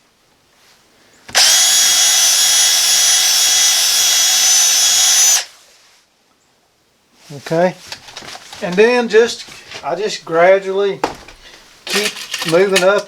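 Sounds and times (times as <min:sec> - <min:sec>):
electric drill whining: 0:01.3 - 0:05.5.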